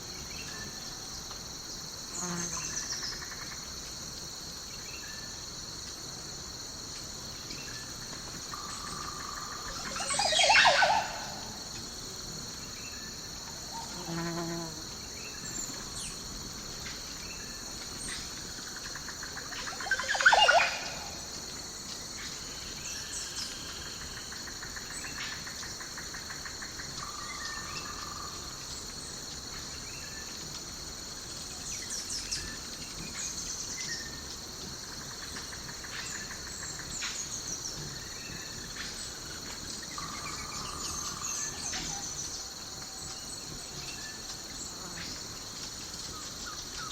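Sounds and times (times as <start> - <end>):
crickets and insects chirping: 0.0 - 46.9
bird calls: 19.3 - 21.2.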